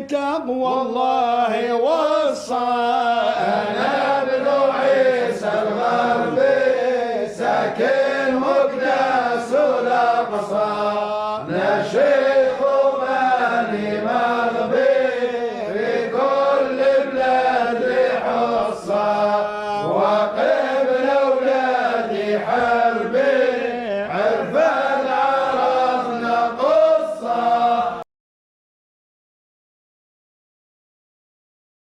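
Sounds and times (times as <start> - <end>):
devotional chanting: 0.0 - 28.1.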